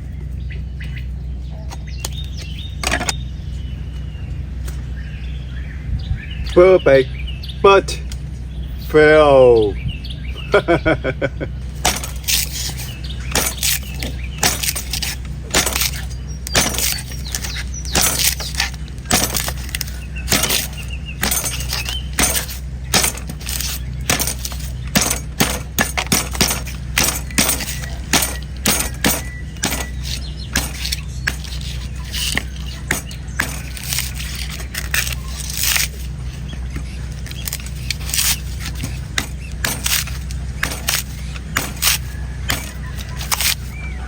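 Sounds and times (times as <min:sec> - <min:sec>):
steady low hum: 0:00.0 - 0:44.0
knife chopping coconut husk: 0:11.8 - 0:44.0.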